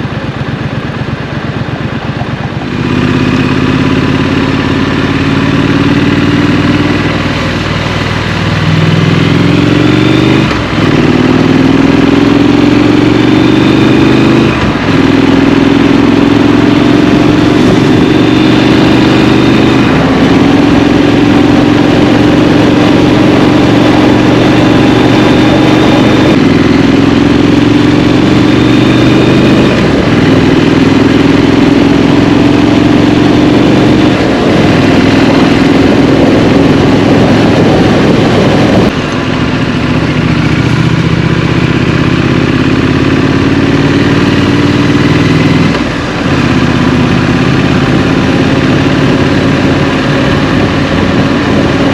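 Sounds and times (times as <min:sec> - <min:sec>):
motorcycle engine accelerating: 0:00.0 - 0:51.9.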